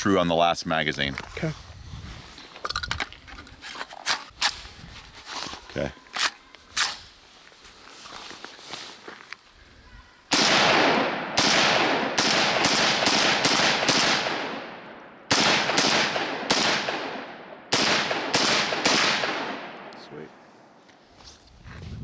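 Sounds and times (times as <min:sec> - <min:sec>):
gunshots with long echo: 0:10.3 - 0:20.5.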